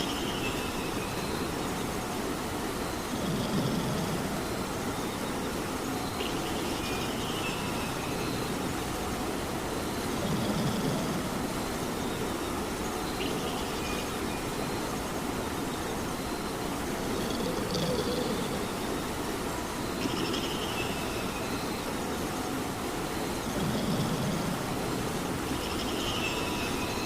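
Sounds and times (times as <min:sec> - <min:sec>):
steady rain hiss: 0:00.0 - 0:27.0
cat snoring: 0:03.2 - 0:04.2, 0:17.2 - 0:18.6, 0:23.6 - 0:24.5.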